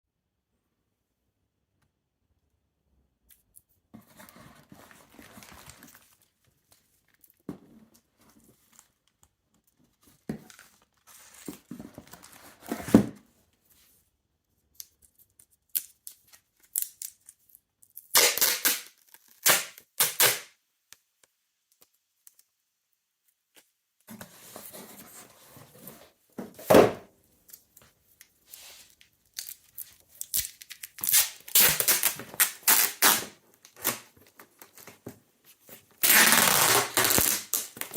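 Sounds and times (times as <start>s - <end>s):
packing tape ripping off roll: 18.1s - 20.5s, 29.3s - 34.9s, 36.0s - 37.9s.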